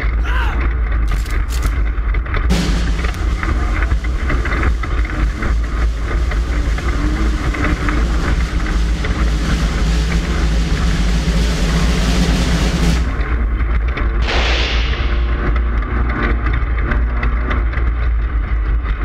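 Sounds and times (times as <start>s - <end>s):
race car engine hum: 1.8s - 14.2s
high hiss: 14.2s - 15.6s.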